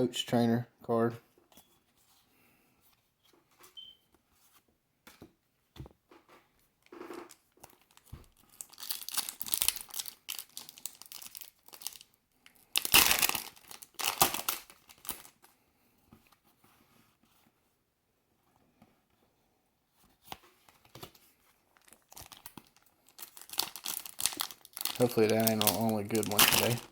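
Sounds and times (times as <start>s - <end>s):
foil wrapper crinkling and tearing: 7.3s - 15.4s, 21.7s - 26.9s.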